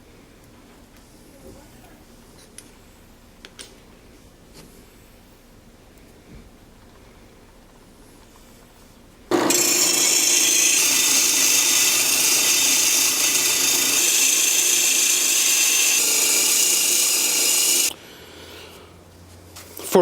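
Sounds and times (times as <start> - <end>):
power tool cutting wood: 9.3 - 18.0.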